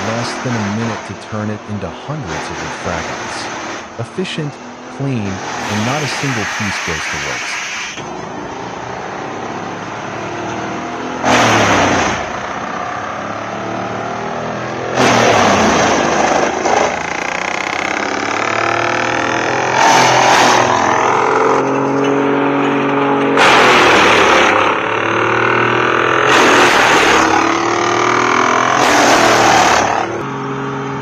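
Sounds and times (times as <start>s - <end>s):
wood chipper engine droning: 0.0s - 8.5s, 14.9s - 31.0s.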